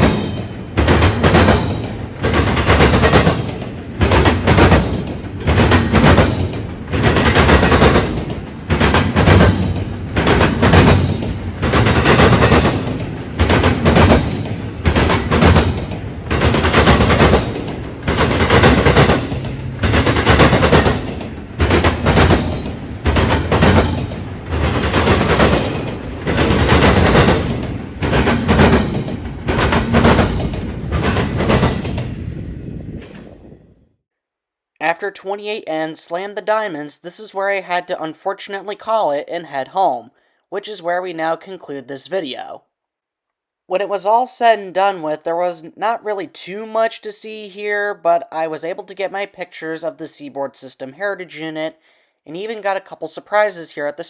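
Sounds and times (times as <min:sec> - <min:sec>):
train wheels banging over crossing: 0:00.0 - 0:33.2
train rumble: 0:00.0 - 0:33.8.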